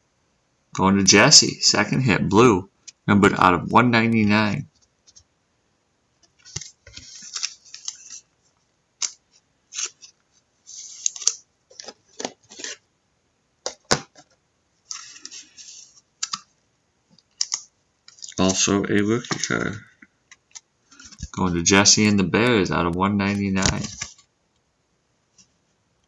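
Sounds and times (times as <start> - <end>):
cards sliding swishes: 6.4 - 8.3, 9.0 - 12.8.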